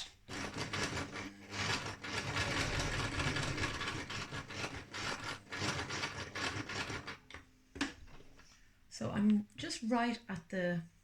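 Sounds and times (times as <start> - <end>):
sewing machine needle chatter: 0.3 - 7.2
sewing machine motor hum: 0.3 - 7.3.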